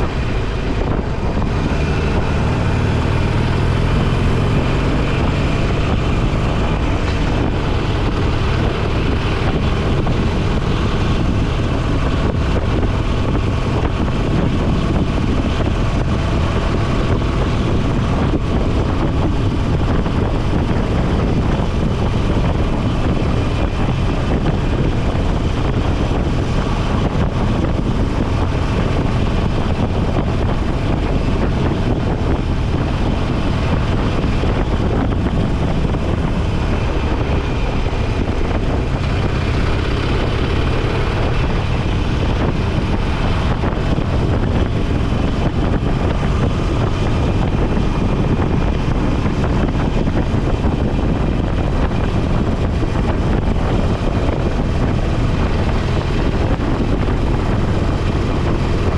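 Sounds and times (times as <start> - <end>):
motorcycle engine cruising: 0.0 - 58.9
wind rushing over microphone: 0.0 - 58.9.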